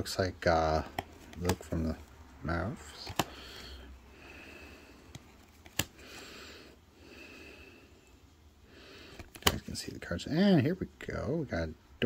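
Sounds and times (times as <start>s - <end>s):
person breathing through nose: 3.2s - 5.1s, 5.9s - 8.0s.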